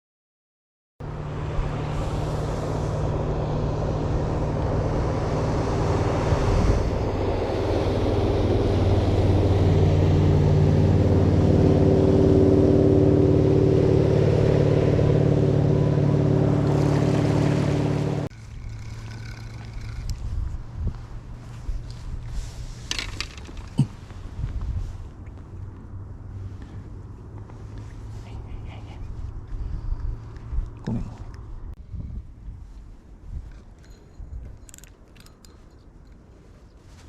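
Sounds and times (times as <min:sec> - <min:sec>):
boat engine running: 0:01.0 - 0:24.1.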